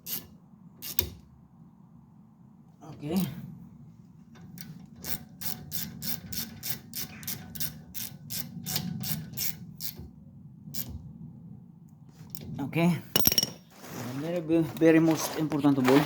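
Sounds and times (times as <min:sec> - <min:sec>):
ratchet wrench clicking: 0:00.0 - 0:01.1, 0:04.6 - 0:10.0.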